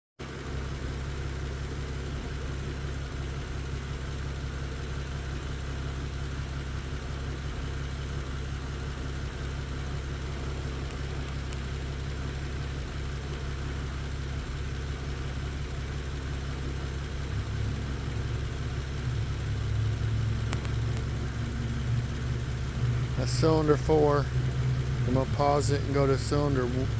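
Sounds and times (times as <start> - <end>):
car engine idling: 0.2 - 26.9.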